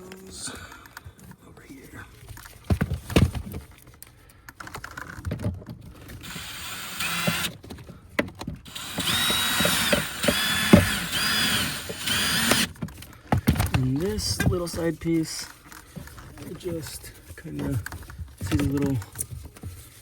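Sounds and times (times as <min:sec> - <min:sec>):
cordless drill driving screw: 0:06.2 - 0:07.6, 0:08.6 - 0:12.8.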